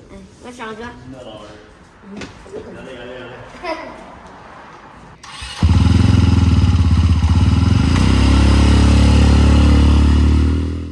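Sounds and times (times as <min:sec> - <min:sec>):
motorcycle engine running: 0:05.3 - 0:10.9.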